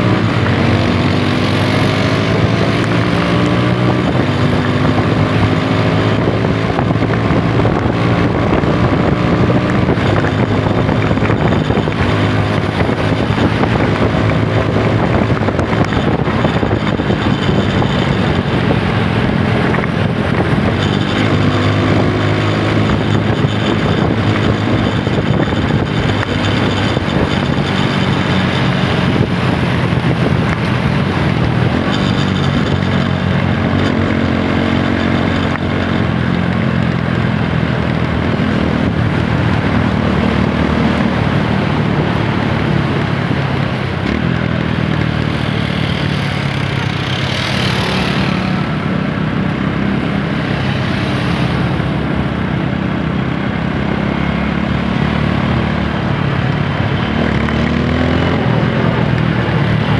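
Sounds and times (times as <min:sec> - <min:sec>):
motorcycle engine running: 0:00.0 - 0:59.9
wind and road noise: 0:00.0 - 0:59.9.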